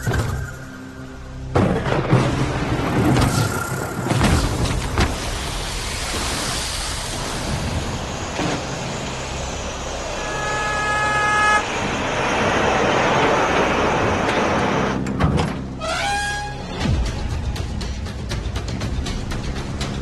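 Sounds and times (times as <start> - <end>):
vehicle engine and road noise: 0.0 - 20.0
car horn: 10.1 - 11.7, 15.8 - 16.7.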